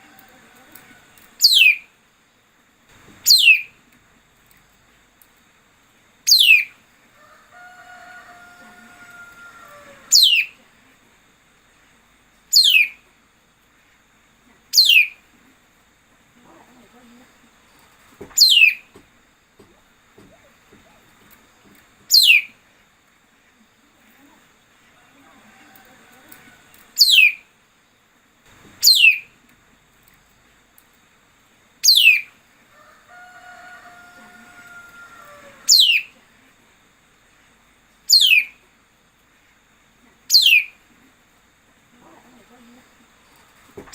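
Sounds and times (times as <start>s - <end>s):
songbird whistled call: 1.4s - 1.9s, 3.3s - 3.7s, 6.3s - 6.7s, 10.1s - 10.6s, 12.6s - 13.0s, 14.8s - 15.2s, 18.4s - 18.8s, 22.1s - 22.5s, 27.0s - 27.4s, 28.8s - 29.3s, 31.8s - 32.3s, 35.7s - 36.1s, 38.1s - 38.5s, 40.3s - 40.7s.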